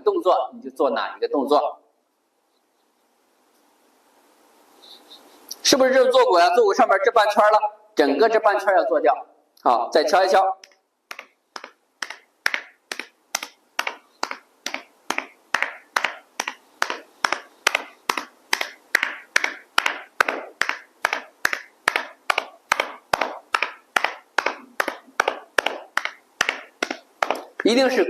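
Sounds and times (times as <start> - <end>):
hand tapping on body: 10.6 - 27.8.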